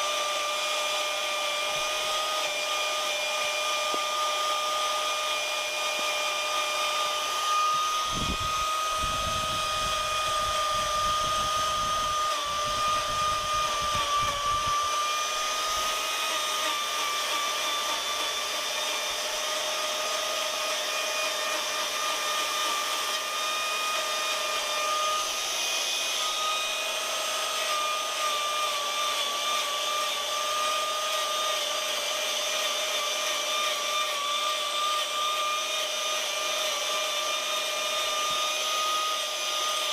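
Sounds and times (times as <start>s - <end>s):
power carving tool whine: 0.0s - 39.9s.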